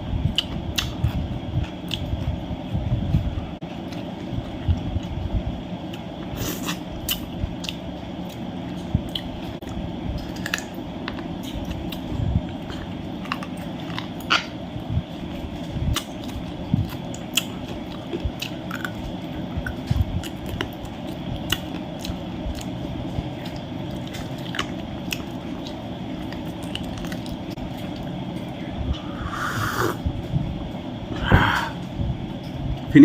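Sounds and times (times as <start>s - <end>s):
person chewing food: 0.3s - 2.3s, 5.8s - 28.2s.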